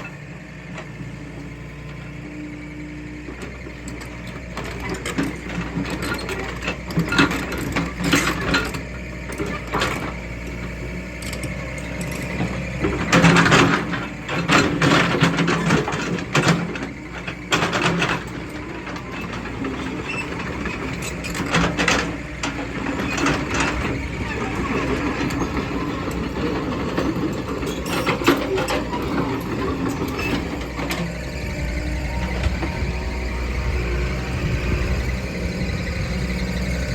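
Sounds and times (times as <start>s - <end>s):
excavator diesel engine running: 0.0s - 36.9s
clattering and scraping: 12.4s - 31.3s.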